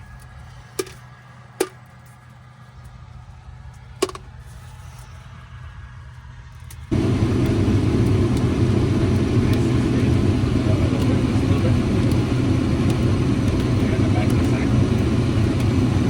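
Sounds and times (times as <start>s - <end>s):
heavy machine engine humming: 6.9s - 16.0s.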